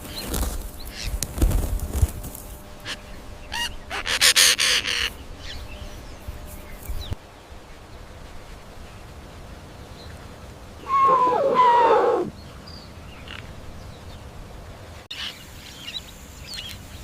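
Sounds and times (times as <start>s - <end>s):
harsh rattling animal call: 2.8s - 5.2s, 10.8s - 12.3s.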